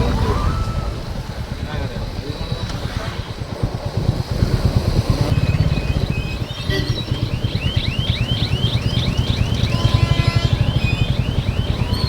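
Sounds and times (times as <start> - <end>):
high rising chirp: 0.0 - 2.8, 5.3 - 12.0.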